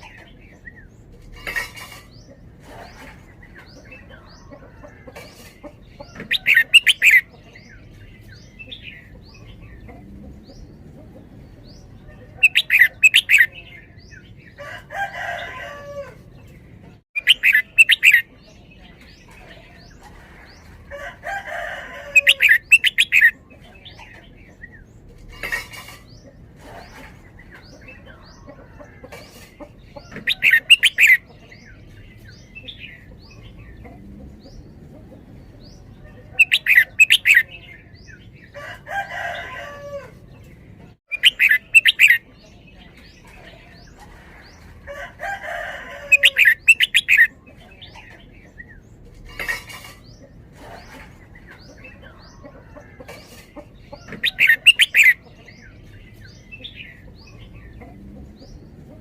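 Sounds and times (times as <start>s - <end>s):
bulbul singing: 5.4s - 10.8s, 11.6s - 14.6s, 17.1s - 19.9s, 21.5s - 26.2s, 27.4s - 34.8s, 35.5s - 38.6s, 41.0s - 44.0s, 45.4s - 50.2s, 50.8s - 58.6s.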